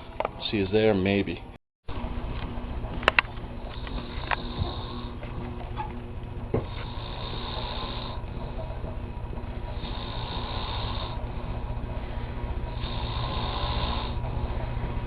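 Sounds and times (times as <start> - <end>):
man snoring: 3.8 - 5.2, 6.6 - 8.2, 9.7 - 11.2, 12.7 - 14.2.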